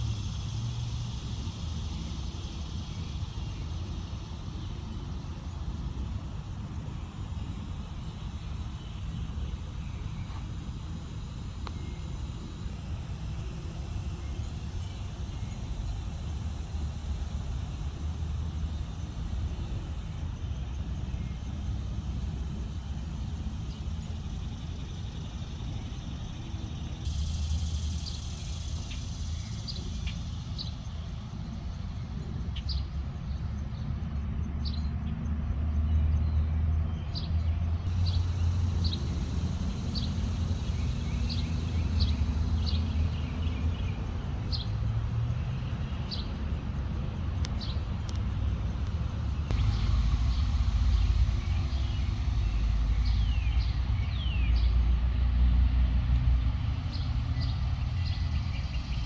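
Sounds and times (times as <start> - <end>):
steady low rumble: 0.0 - 59.0
birds chirping: 47.1 - 59.0.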